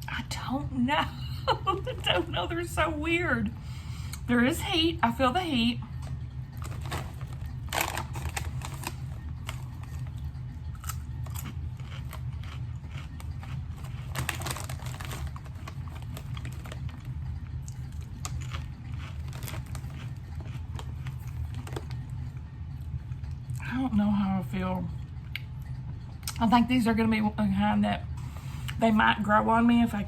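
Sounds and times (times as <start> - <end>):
steady low hum: 0.0 - 30.0
potato chips crunched and chewed: 6.6 - 22.2.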